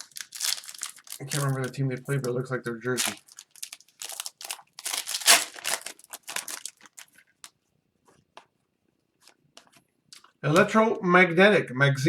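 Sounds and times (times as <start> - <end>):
foil wrapper crinkling: 0.0 - 7.6.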